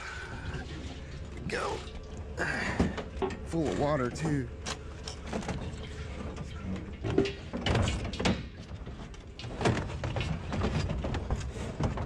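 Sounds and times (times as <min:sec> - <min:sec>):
objects knocking and scraping in dumpster: 0:05.2 - 0:12.0.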